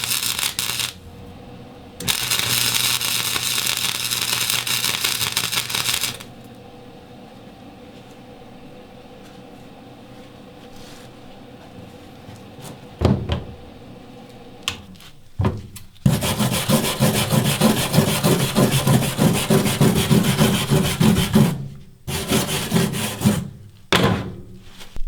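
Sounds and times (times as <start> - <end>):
welder arc crackling: 0.0 - 6.7.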